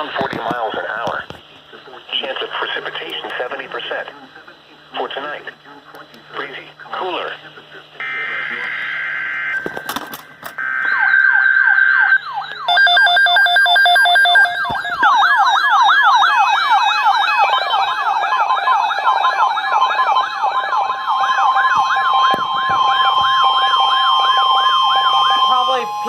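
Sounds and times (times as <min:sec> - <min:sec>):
electronic siren yelp sweeps: 0:08.0 - 0:26.0
steady electronic siren tones: 0:08.0 - 0:26.0.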